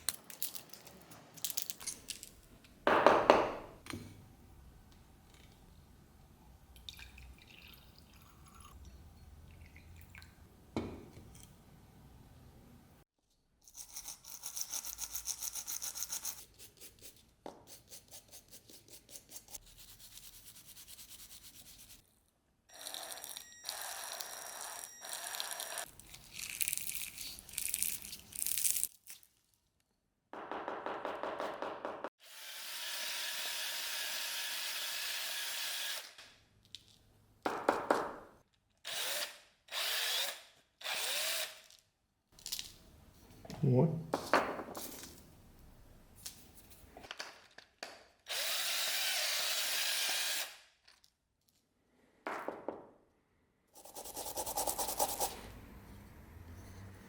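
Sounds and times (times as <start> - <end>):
hand brush scrubbing: 53.8 - 55.5.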